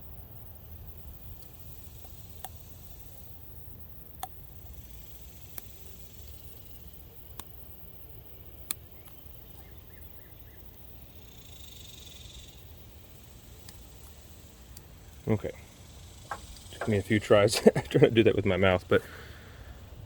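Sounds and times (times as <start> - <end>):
tools clicking on plastic connector: 16.3 - 17.1.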